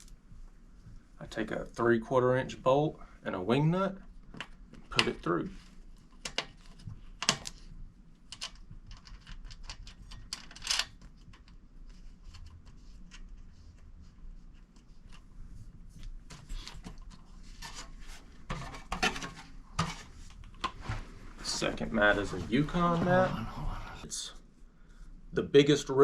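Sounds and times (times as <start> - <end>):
parts scraping and rubbing: 16.3 - 24.1.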